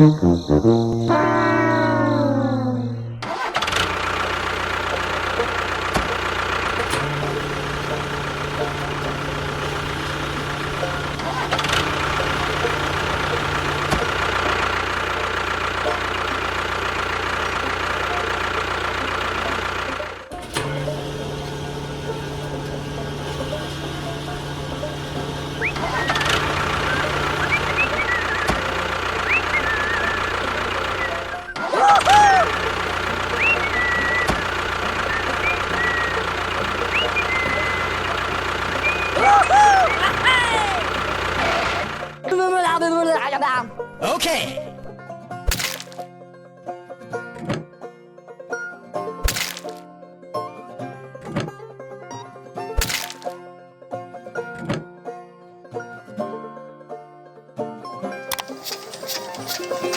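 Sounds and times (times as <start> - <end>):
high chirping glides: 0.0 - 3.3, 25.6 - 31.6, 33.3 - 41.2
brass-like music: 0.0 - 3.5
engine running with low hum: 0.0 - 42.3, 58.3 - 59.9
sharp click: 58.3 - 59.9.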